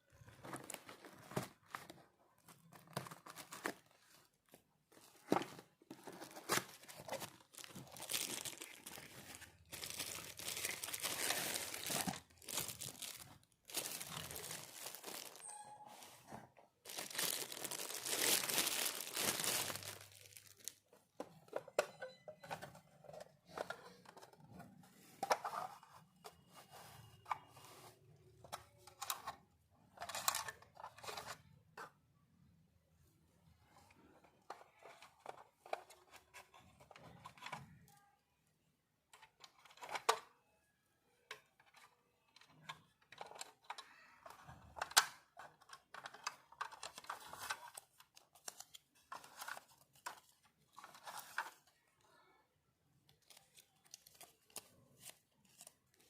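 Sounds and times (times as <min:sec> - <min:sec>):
packaging crinkling and tearing: 0:06.0 - 0:15.5, 0:16.9 - 0:20.8.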